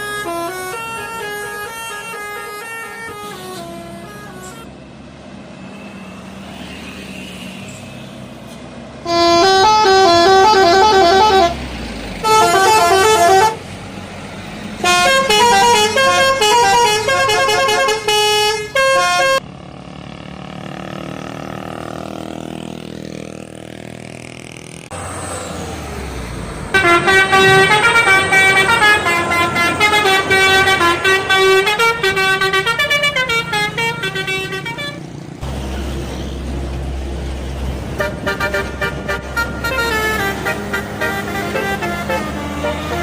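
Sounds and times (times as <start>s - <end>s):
multi-note bus horn tune: 0.0s - 4.7s, 9.0s - 13.7s, 14.8s - 19.4s, 26.7s - 35.1s, 37.9s - 43.0s
bus engine: 0.0s - 43.0s
traffic noise: 0.0s - 43.0s.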